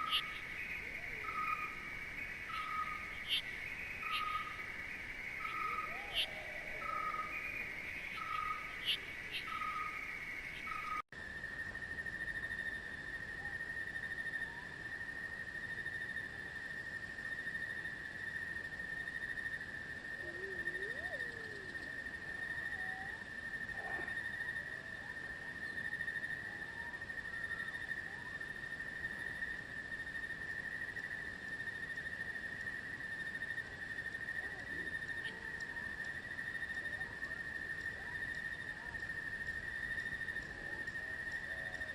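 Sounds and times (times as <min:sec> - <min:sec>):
faint bird-like calls: 0:00.0 - 0:11.0, 0:20.0 - 0:29.5, 0:33.2 - 0:41.9.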